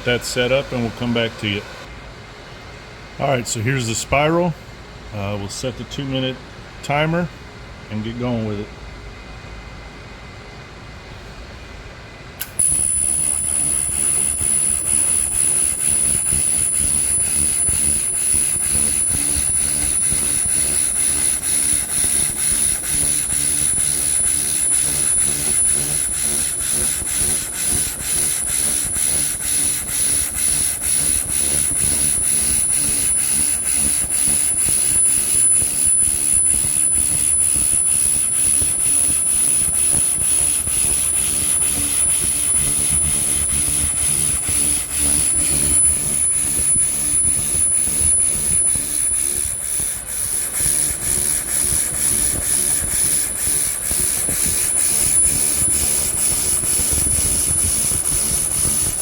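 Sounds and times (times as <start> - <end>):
laser cleaner whine and pulsing hiss: 12.4 - 59.0.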